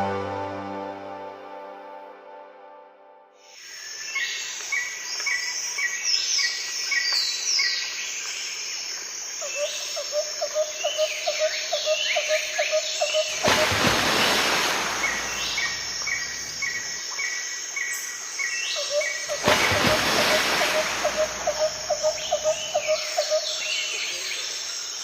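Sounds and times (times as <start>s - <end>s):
birds chirping: 13.0s - 17.0s, 18.8s - 24.5s.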